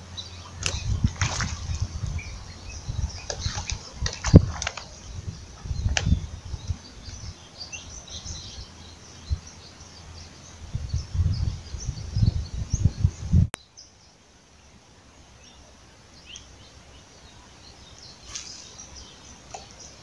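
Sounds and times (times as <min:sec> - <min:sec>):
wind buffeting microphone: 0:00.0 - 0:13.6
small birds chirping: 0:00.0 - 0:20.0.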